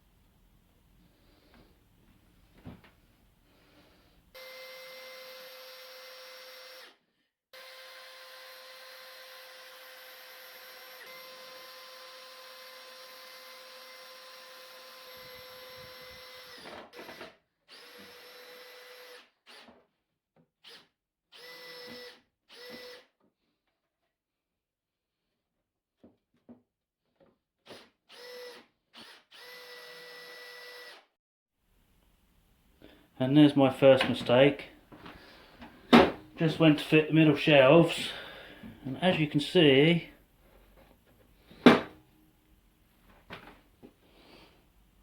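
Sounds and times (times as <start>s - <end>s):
power drill motor whining: 4.4s - 7.0s, 7.6s - 19.8s, 20.6s - 23.1s, 27.7s - 31.1s.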